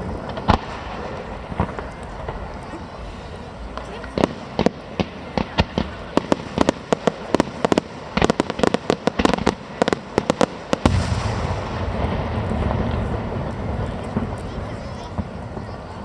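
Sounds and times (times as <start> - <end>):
sharp firework bangs: 0.0 - 2.5, 3.8 - 16.0
continuous rumbling din: 10.9 - 16.0.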